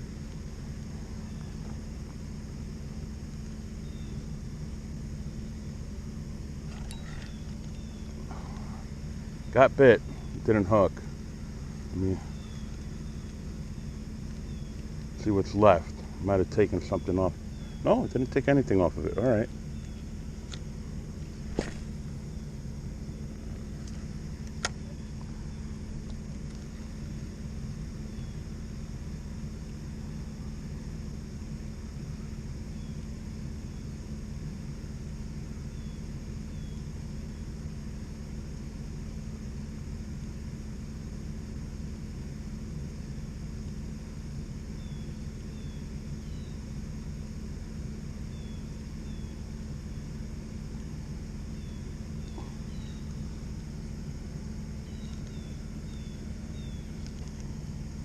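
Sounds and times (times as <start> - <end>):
low mechanical hum: 0.0 - 58.0
faint bird chirps: 3.8 - 4.3, 6.7 - 10.4, 11.6 - 16.2, 16.8 - 18.2, 19.1 - 20.2, 28.0 - 28.5, 35.7 - 37.4, 44.8 - 46.7, 48.3 - 50.0, 51.5 - 53.3, 54.8 - 57.0
sharp click: 6.7 - 7.8.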